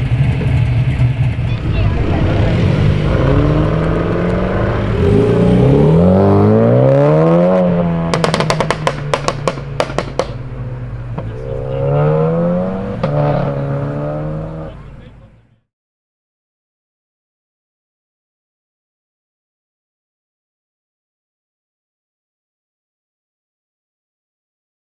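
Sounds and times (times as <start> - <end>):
exhaust crackles and pops: 0.0 - 5.6, 8.0 - 10.4
car engine revving: 0.0 - 15.4.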